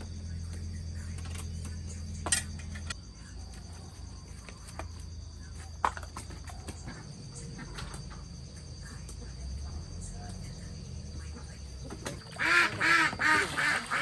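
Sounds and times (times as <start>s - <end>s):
insects trilling: 0.0s - 14.0s
low hum: 0.0s - 14.0s.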